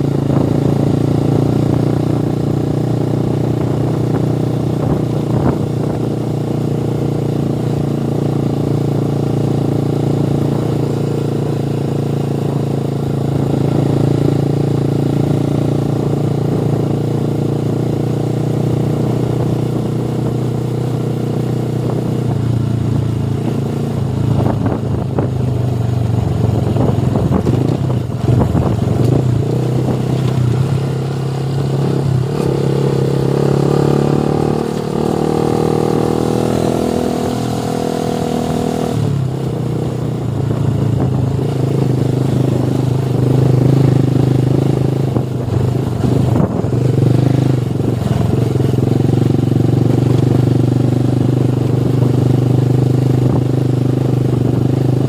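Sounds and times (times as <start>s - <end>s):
motorcycle engine running: 0.0s - 55.0s
higher engine tone: 21.8s - 52.0s.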